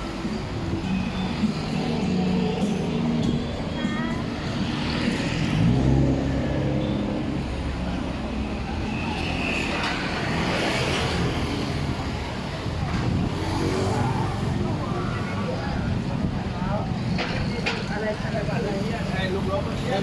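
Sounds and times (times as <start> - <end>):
traffic hum: 0.0 - 20.0
vehicle engine passing: 4.3 - 11.6.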